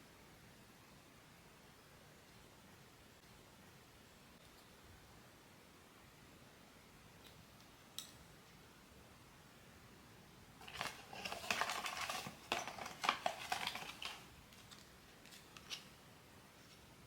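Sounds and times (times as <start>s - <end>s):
packaging clicks: 10.6s - 15.8s
packaging rustling and crinkling: 10.6s - 15.9s.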